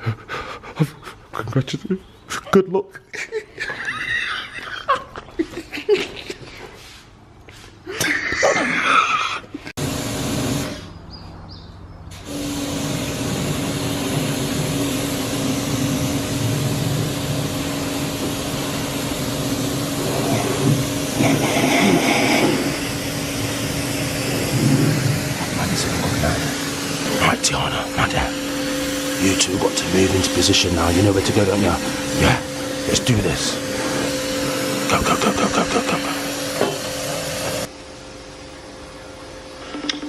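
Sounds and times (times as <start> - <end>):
girls laughing and giggling: 3.0 - 6.8, 7.8 - 9.7, 34.9 - 36.3
machine drone: 9.8 - 11.0, 12.2 - 40.0.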